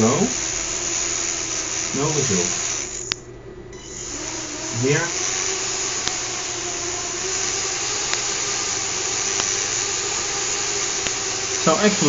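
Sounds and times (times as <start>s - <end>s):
electric motor whirring: 0.0s - 12.0s
propeller air whoosh: 3.8s - 12.0s
faint ticks: 5.9s - 6.3s, 7.3s - 12.0s.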